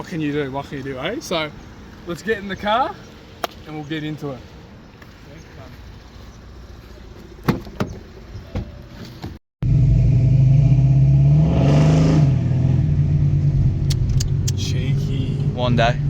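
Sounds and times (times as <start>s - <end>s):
car engine running and revving: 9.6s - 16.0s.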